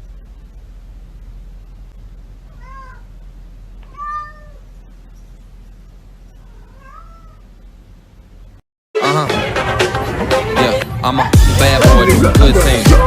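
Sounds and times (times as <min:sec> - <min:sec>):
steady low hum: 0:00.0 - 0:08.6
cat meowing: 0:02.5 - 0:03.1, 0:03.8 - 0:04.7, 0:06.4 - 0:07.5.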